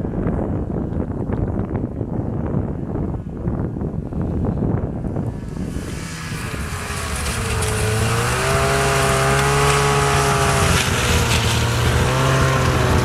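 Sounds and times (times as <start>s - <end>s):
snowmobile engine running hard: 4.5s - 13.0s.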